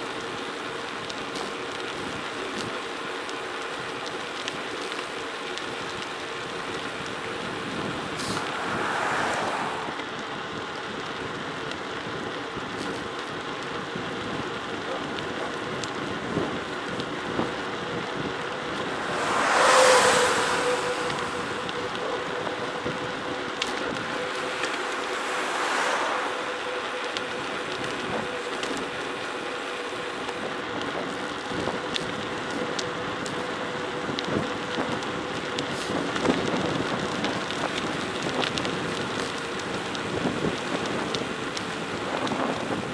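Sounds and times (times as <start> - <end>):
tyres rolling on forest road: 0.0 - 42.9
wind rushing over microphone: 5.7 - 13.1, 15.3 - 29.0, 30.1 - 42.9.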